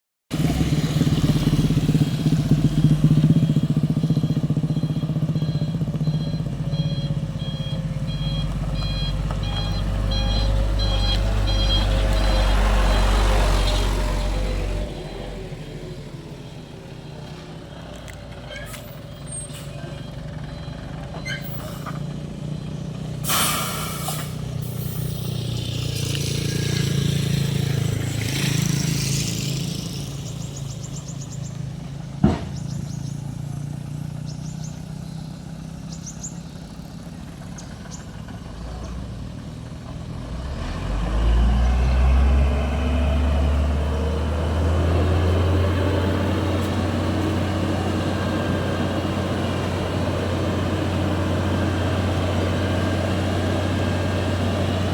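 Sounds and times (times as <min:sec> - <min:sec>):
diesel truck engine running: 0:00.3 - 0:54.9
air-brake hiss: 0:23.2 - 0:25.3.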